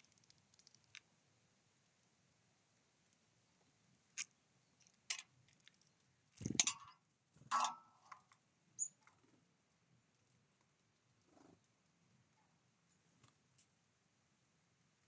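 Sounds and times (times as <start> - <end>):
birds pecking and tapping: 0.0 - 1.0, 4.2 - 9.2.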